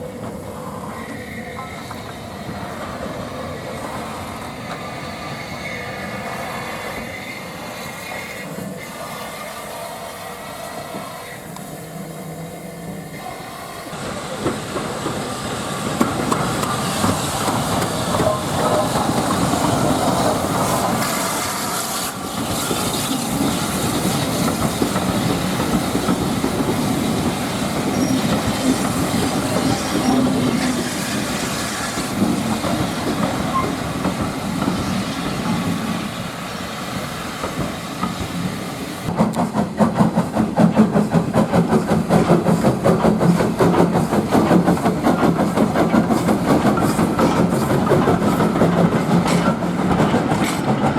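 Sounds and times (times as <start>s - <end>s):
steam hissing: 0.0s - 50.9s
train wheels clattering: 14.0s - 50.9s.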